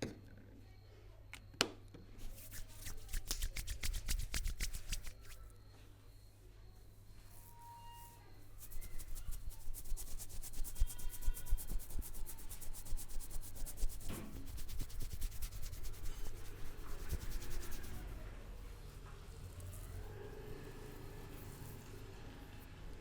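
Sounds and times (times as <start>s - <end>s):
hands rubbing scalp and hair: 2.2s - 5.4s, 8.6s - 18.1s.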